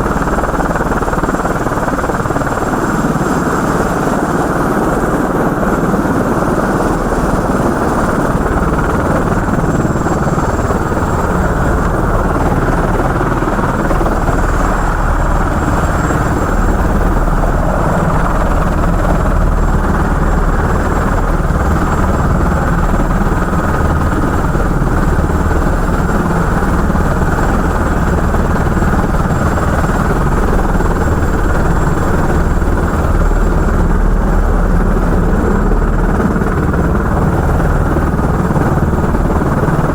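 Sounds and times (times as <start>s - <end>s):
helicopter engine and rotor: 0.0s - 39.9s.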